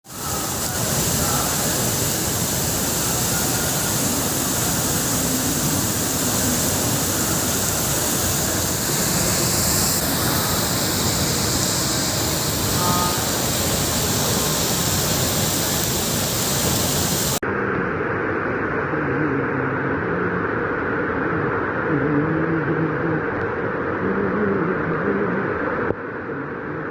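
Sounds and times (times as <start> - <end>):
heavy rain pouring: 0.0 - 17.4
dull low rush: 0.0 - 26.9.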